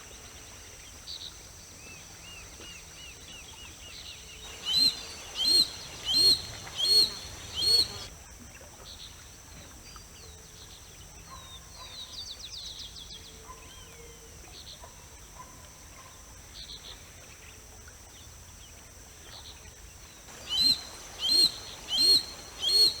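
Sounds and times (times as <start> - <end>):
birds chirping and whistling: 4.5 - 8.1, 20.3 - 23.0
loud sharp bird calls: 4.5 - 8.1, 20.3 - 23.0.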